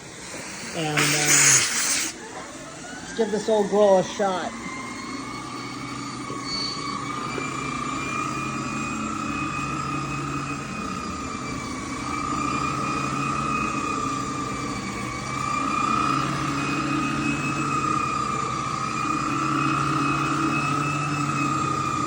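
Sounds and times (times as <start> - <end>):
vacuum cleaner whining: 0.0 - 22.0.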